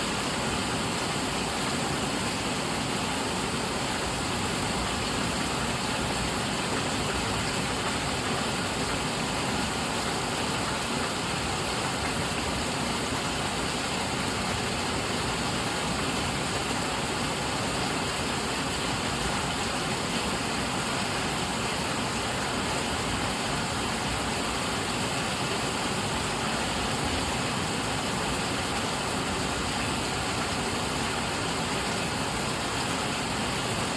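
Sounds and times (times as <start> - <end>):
heavy rain on leaves: 0.0 - 33.9.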